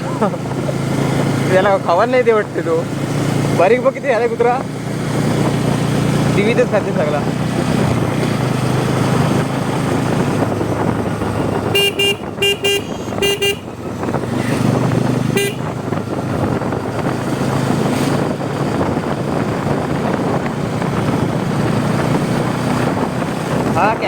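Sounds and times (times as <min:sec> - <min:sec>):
motorcycle engine running: 0:00.0 - 0:24.0
road noise: 0:00.0 - 0:24.0
horn toots: 0:11.5 - 0:13.7, 0:15.3 - 0:15.7.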